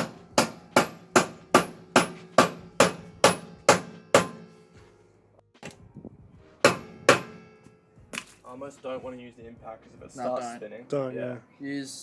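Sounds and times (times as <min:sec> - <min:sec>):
hammer ringing on metal: 0:00.0 - 0:04.6, 0:06.6 - 0:07.6.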